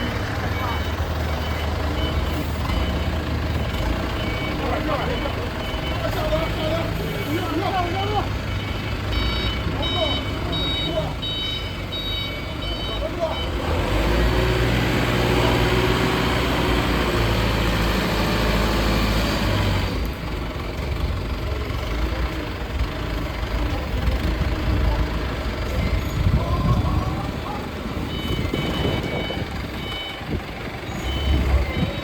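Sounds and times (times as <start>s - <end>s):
reversing alarm beeping: 0.0s - 14.1s, 28.0s - 32.0s
heavy vehicle engine running: 0.0s - 32.0s.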